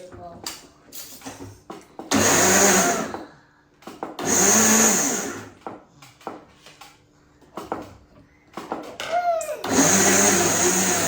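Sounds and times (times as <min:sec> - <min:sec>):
blender running: 0:02.1 - 0:03.2, 0:04.2 - 0:05.6, 0:09.6 - 0:11.0.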